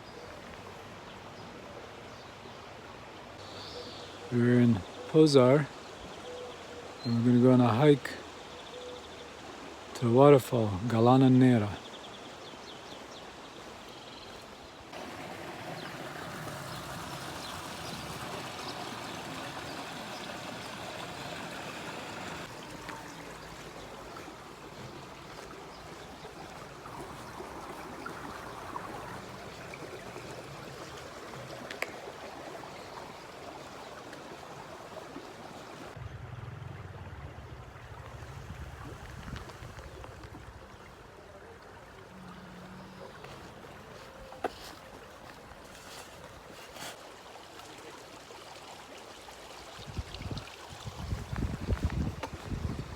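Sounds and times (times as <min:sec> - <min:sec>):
stream of flowing water: 0:00.0 - 0:52.9
low rumble: 0:36.0 - 0:39.5.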